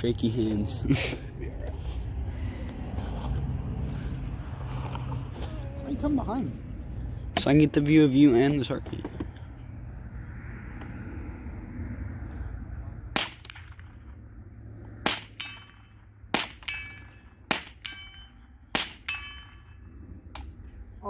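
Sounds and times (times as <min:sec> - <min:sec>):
short metallic ring: 0:15.3 - 0:16.0, 0:16.6 - 0:19.9.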